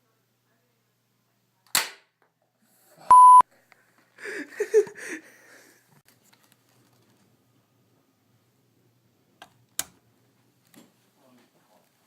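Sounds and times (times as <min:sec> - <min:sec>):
loud electronic beep: 0:03.1 - 0:03.4.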